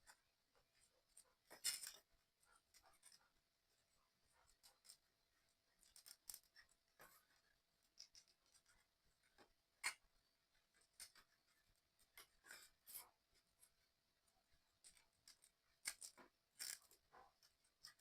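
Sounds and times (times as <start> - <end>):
small plastic parts clicking: 5.8 - 7.3, 14.8 - 18.0.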